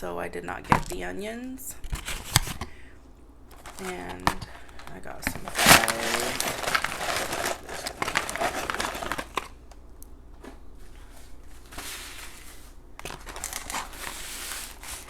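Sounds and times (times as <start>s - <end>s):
paper packaging rustling: 1.8s - 2.7s, 3.5s - 9.6s, 10.4s - 15.0s.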